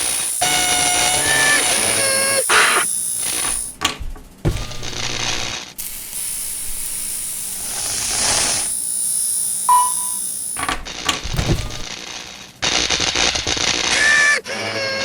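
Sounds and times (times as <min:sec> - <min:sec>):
hiss: 0:00.0 - 0:03.8, 0:05.8 - 0:10.7
mechanical clicks: 0:00.0 - 0:12.0
short beep: 0:09.7 - 0:10.2.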